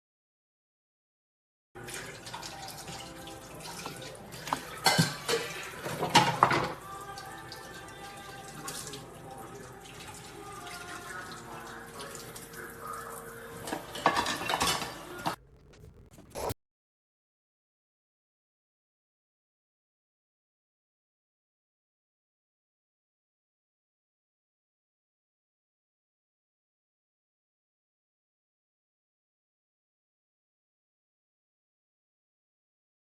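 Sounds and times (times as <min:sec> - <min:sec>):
water running and dripping: 0:01.8 - 0:05.9, 0:07.1 - 0:14.0
crockery clinking and clattering: 0:04.4 - 0:06.8, 0:13.7 - 0:15.4.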